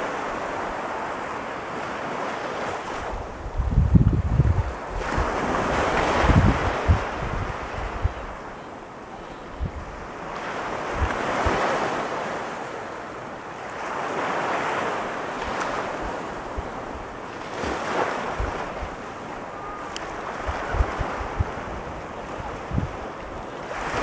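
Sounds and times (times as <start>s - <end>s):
surf breaking on beach: 0.0s - 8.9s, 9.6s - 24.0s
wind buffeting microphone: 2.9s - 8.5s, 9.4s - 11.8s, 15.4s - 24.0s.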